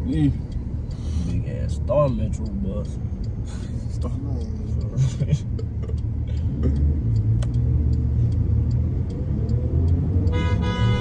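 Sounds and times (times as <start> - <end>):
faint regular ticking: 0.0 - 10.4
car horn: 10.3 - 11.0.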